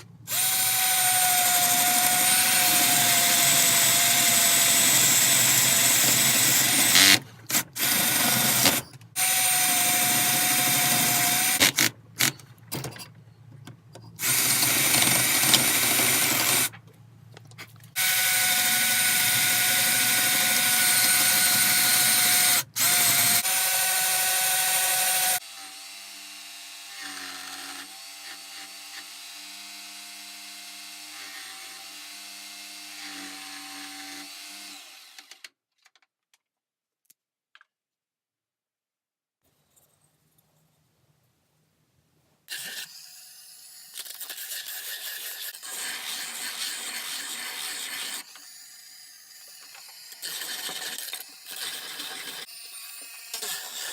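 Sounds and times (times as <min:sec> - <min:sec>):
power tool working wood: 0:00.3 - 0:11.9, 0:14.2 - 0:16.7, 0:18.0 - 0:35.4.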